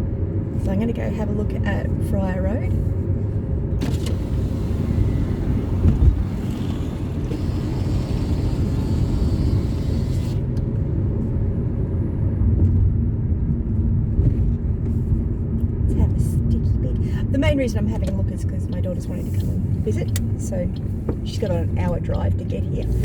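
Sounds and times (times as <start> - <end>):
car engine and tyre rumble: 0.0 - 23.0.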